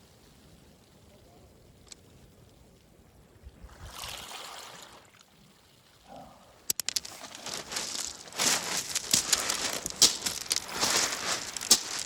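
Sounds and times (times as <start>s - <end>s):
stones rattling in surf: 6.7s - 12.0s
wave washing over pebbles: 6.7s - 12.0s.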